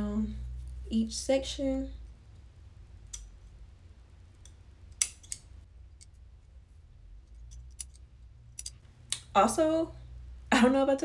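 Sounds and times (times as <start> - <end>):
scissors snipping: 4.4 - 5.5.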